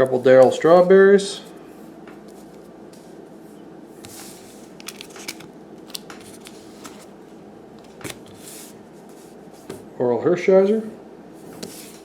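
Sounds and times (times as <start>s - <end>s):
low room hum: 0.0s - 12.0s
cards clicking and rustling: 4.1s - 7.1s.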